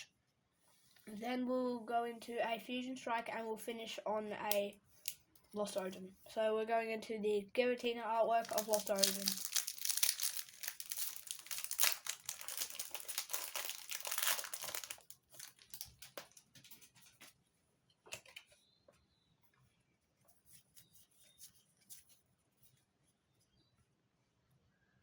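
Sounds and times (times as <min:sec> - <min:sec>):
foil wrapper crinkling and tearing: 0:08.4 - 0:17.0.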